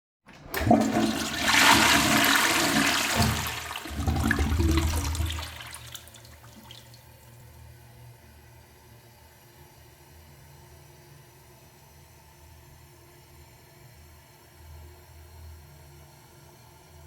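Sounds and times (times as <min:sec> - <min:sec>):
toilet flushing: 0:00.3 - 0:07.4.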